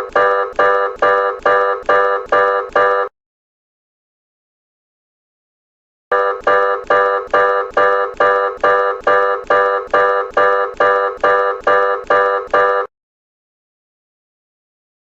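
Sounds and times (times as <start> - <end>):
pulsing electronic alert tone: 0.0 - 3.1, 6.1 - 12.9.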